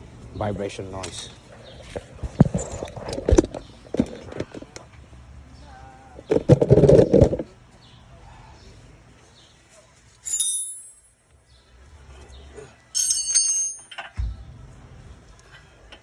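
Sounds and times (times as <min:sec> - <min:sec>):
metal parts clinking: 0:10.2 - 0:11.2, 0:13.0 - 0:14.2
short dull thump: 0:14.2 - 0:14.5.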